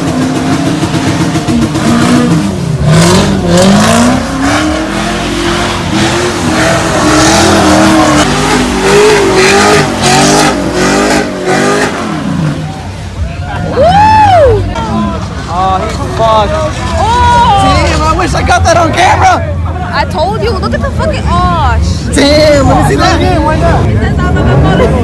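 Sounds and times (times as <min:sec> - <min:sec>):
car engine revving: 0:00.0 - 0:19.1.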